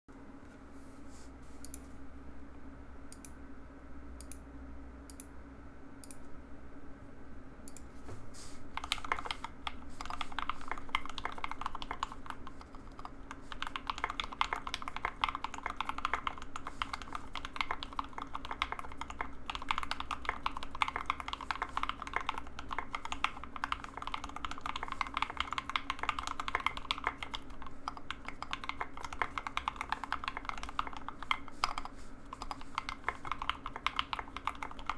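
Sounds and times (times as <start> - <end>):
mechanical keyboard typing: 8.7 - 34.9.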